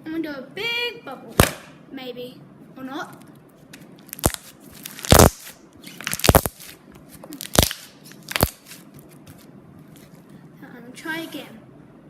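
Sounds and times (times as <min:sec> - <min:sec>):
slime crackling pops: 0:04.1 - 0:06.6, 0:07.4 - 0:08.7
slime being stretched: 0:04.1 - 0:09.4.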